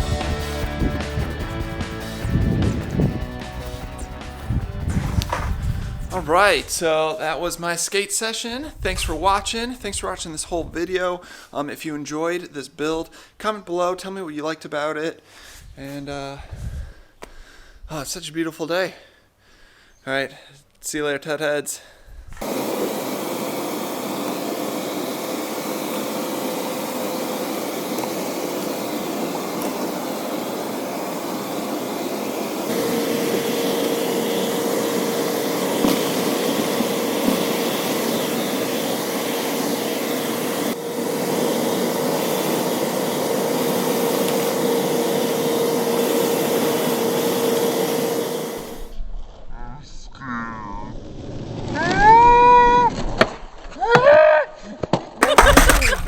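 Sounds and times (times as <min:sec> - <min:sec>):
machine whirring with hum: 0:22.4 - 0:49.0.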